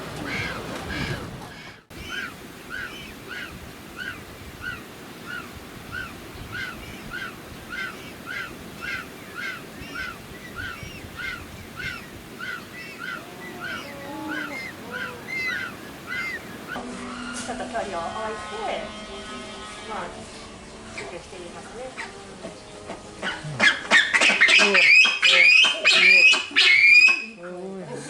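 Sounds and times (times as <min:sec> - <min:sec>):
animal honking calls: 0:00.0 - 0:17.4.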